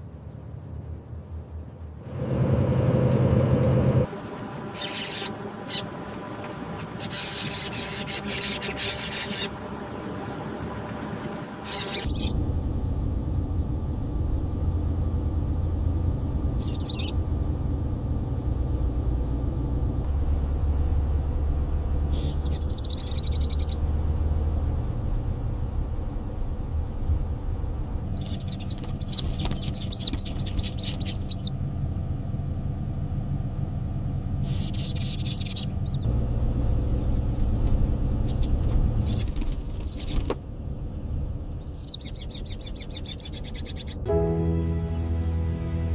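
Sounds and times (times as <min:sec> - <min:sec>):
steady low rumble: 0:00.0 - 0:45.9
bird chirping: 0:04.6 - 0:06.0, 0:06.8 - 0:09.6, 0:11.6 - 0:12.4, 0:16.6 - 0:17.2, 0:22.1 - 0:23.8, 0:28.1 - 0:31.6, 0:34.4 - 0:36.1, 0:38.2 - 0:40.4, 0:41.6 - 0:45.8.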